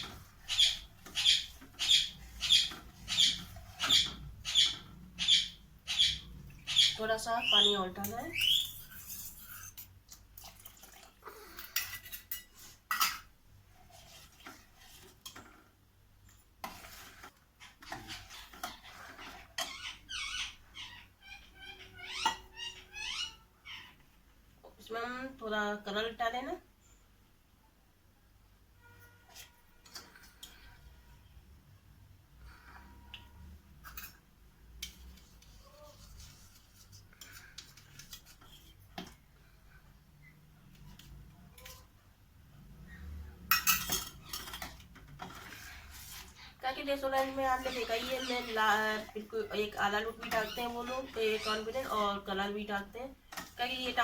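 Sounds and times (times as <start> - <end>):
metal spoon scraping a pot: 0.0 - 5.0, 7.5 - 10.0, 11.5 - 15.6, 16.6 - 20.7, 28.8 - 31.1, 34.8 - 39.2, 43.4 - 52.3
kitchen utensils clicking and tapping: 7.5 - 10.7, 43.5 - 45.7.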